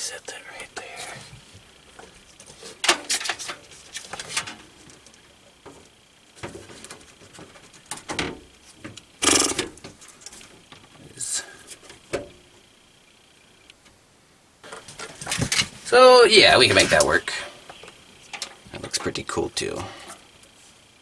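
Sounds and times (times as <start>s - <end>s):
cpu cooler clicking and scraping: 2.0s - 10.6s.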